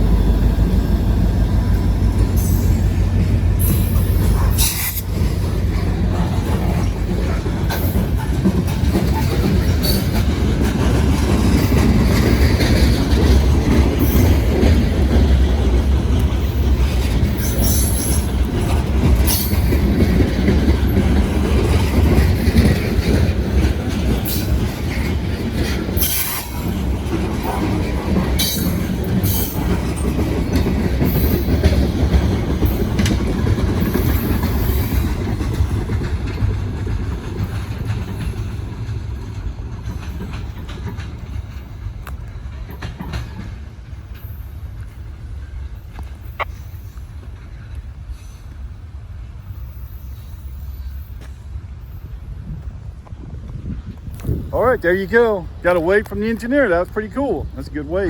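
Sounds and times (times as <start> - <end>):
freight train rumbling: 0.0 - 58.0
wheels clacking over rail joints: 0.0 - 58.0
wheel squeals: 16.4 - 20.2, 23.9 - 27.8.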